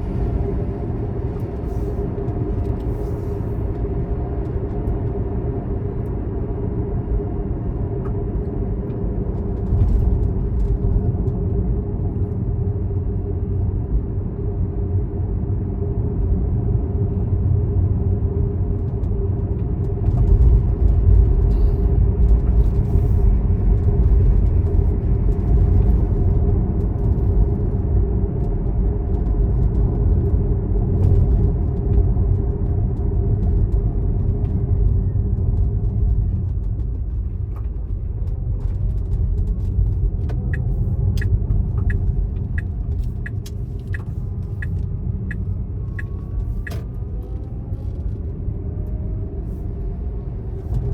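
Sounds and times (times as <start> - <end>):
motor vehicle engine rumbling: 18.4 - 50.9.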